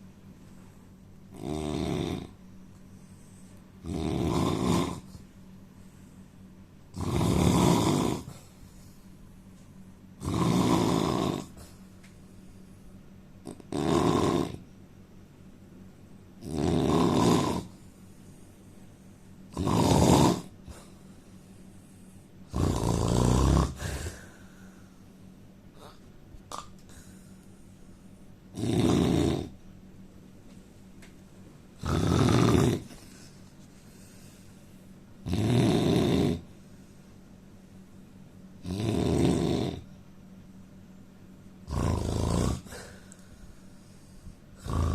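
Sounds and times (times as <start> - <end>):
man snoring loudly: 1.3 - 2.4, 3.8 - 5.2, 6.9 - 8.4, 10.2 - 11.6, 13.5 - 14.6, 16.4 - 17.8, 19.5 - 20.6, 22.5 - 24.2, 28.5 - 29.6, 31.8 - 32.9, 35.2 - 36.5, 38.6 - 39.8, 41.7 - 43.0, 44.6 - 44.9.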